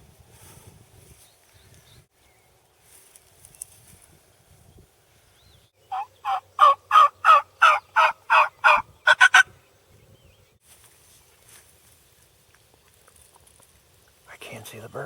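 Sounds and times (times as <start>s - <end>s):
turkey call yelps: 5.9s - 9.5s.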